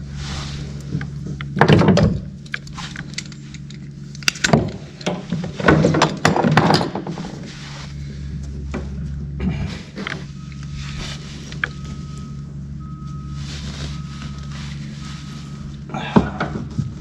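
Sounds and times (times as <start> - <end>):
steady low hum: 0.0 - 17.0
metal tools clinking and rattling: 1.4 - 7.4.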